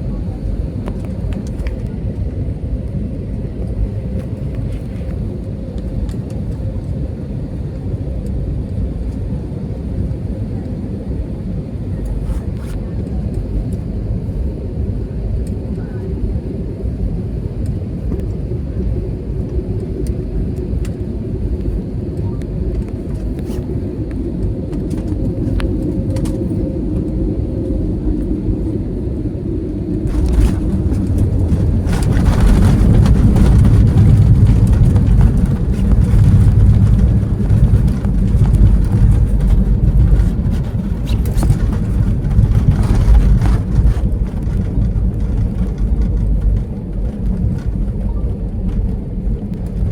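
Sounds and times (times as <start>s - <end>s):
aircraft touching down rush: 0.0s - 49.9s
airliner cabin rumble: 0.0s - 49.9s.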